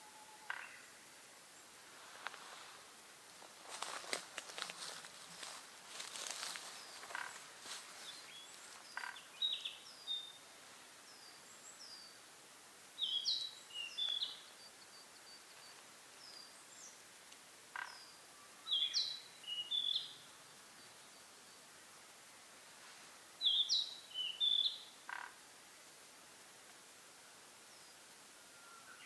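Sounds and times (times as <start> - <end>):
songbirds calling: 0.0 - 1.8, 3.4 - 12.3, 13.0 - 21.8, 23.4 - 25.4
rustle: 0.0 - 29.0.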